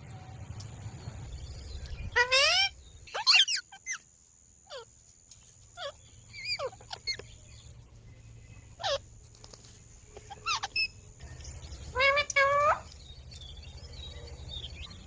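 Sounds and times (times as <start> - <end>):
parakeets calling: 1.3 - 4.9, 5.6 - 9.2, 10.2 - 15.0.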